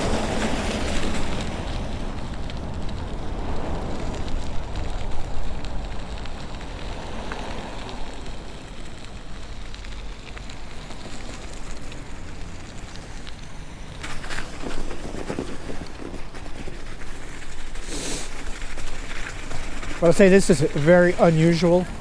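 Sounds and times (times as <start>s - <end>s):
tyres crackling over snow: 0.0s - 22.0s
wind rumbling on microphone: 0.0s - 22.0s.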